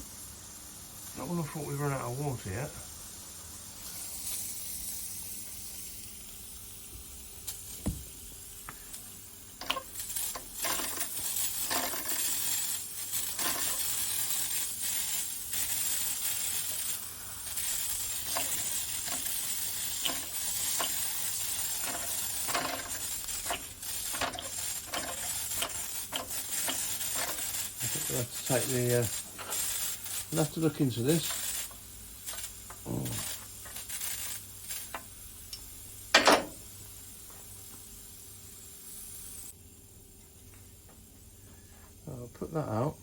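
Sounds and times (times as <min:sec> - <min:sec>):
toy steam boiler hissing: 0:00.0 - 0:39.7
spitting crackles: 0:09.8 - 0:35.0.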